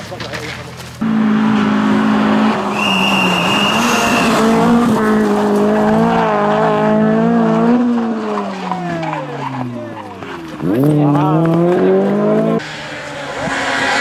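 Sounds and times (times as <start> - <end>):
rally car engine revving: 0.5 - 14.0
high squeal: 2.6 - 5.0.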